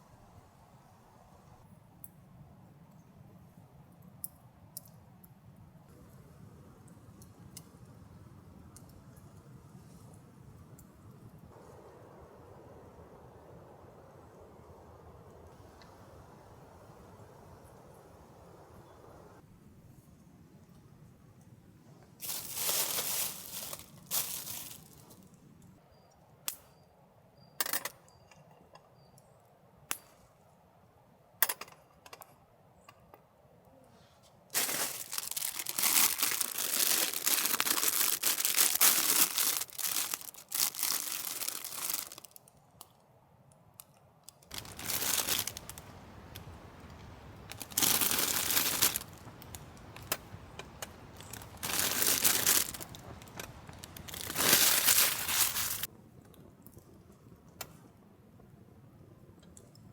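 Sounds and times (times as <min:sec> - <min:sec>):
rustling and crinkling material: 0:22.2 - 0:25.4, 0:34.6 - 0:42.5, 0:44.5 - 0:55.9.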